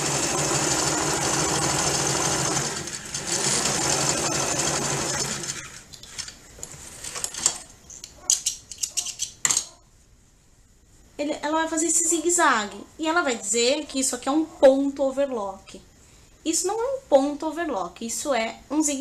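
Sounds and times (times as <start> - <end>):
sewing machine running: 0.0 - 5.8.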